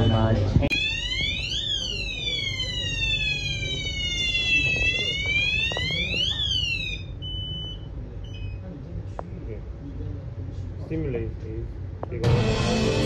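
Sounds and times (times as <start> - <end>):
fire alarm siren wailing: 0.0 - 7.8.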